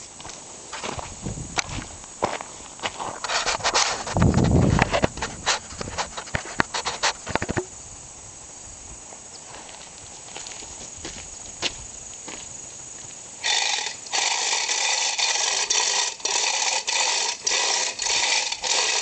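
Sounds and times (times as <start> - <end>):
chain hoist chain and ratchet clattering: 13.4 - 19.0.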